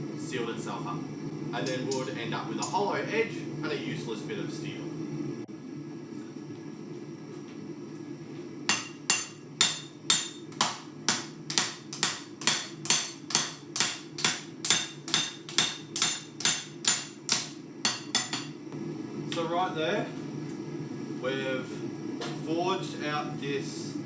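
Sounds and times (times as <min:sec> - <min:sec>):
hammer striking hot steel on anvil: 0:08.7 - 0:18.6.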